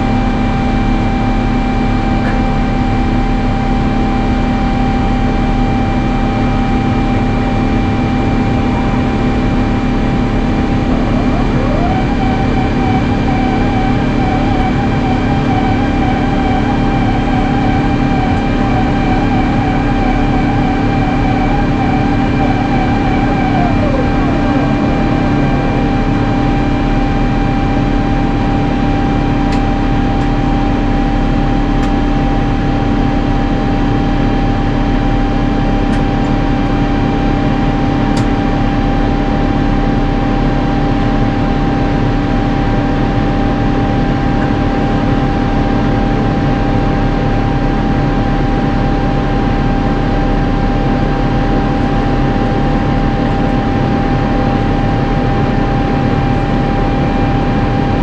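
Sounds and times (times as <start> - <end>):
jet engines droning: 0.0 - 58.0
steady hum tone: 0.0 - 58.0.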